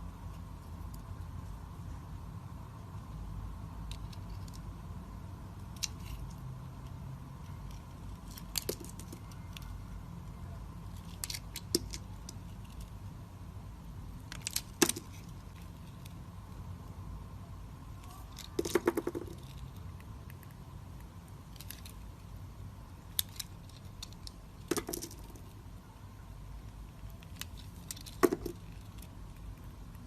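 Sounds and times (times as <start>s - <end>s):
low steady hum: 0.0s - 30.0s.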